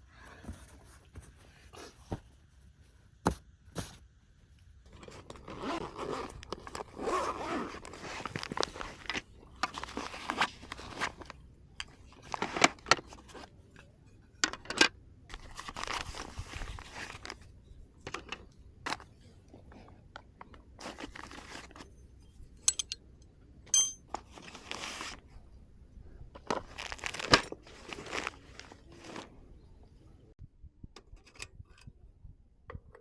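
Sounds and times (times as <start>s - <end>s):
sharp clicks and knocks: 22.7s - 23.0s.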